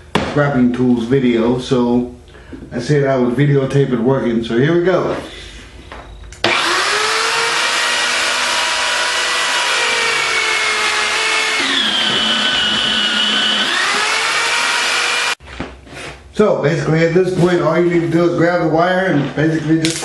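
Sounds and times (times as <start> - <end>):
wire stripping machine motor whine: 6.3 - 15.4.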